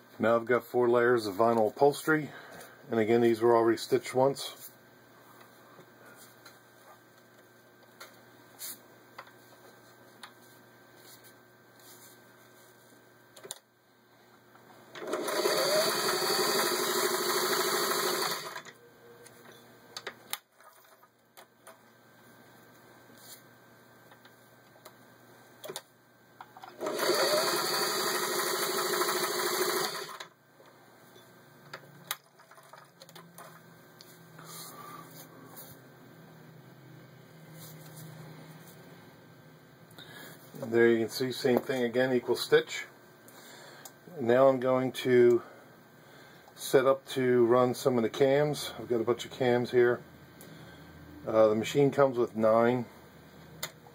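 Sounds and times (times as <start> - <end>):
sewing machine stitching: 15.0 - 18.7, 26.7 - 30.3.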